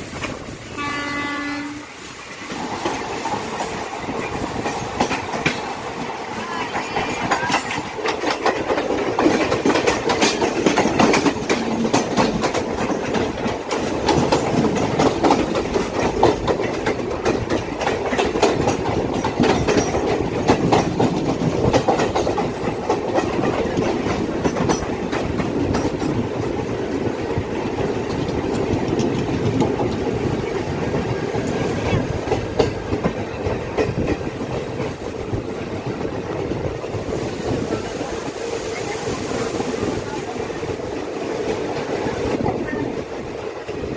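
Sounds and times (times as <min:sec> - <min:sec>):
train rolling rumble: 0:00.0 - 0:43.9
wheels clacking over rail joints: 0:02.3 - 0:38.9.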